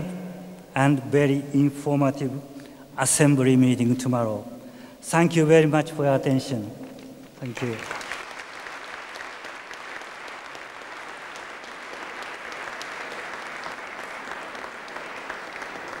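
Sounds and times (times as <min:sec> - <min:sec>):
audience applauding: 0:07.4 - 0:16.0.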